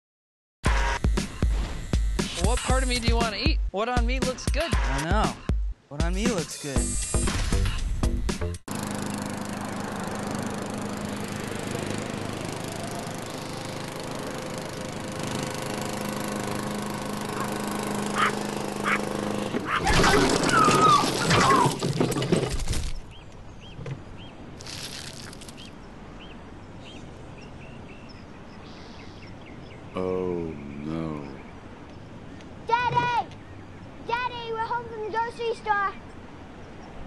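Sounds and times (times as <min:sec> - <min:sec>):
lawn mower engine running: 0:08.7 - 0:23.1
bird chirps: 0:25.4 - 0:32.6.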